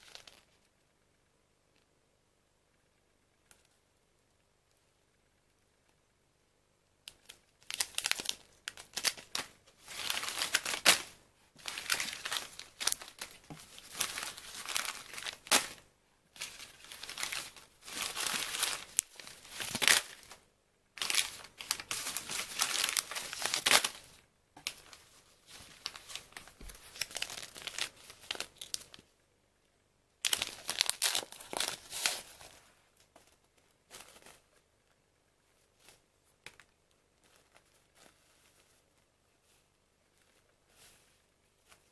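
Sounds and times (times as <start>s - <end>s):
packaging crinkling and tearing: 0.0s - 0.4s, 7.1s - 15.8s, 16.4s - 20.4s, 21.0s - 29.0s, 30.2s - 32.6s.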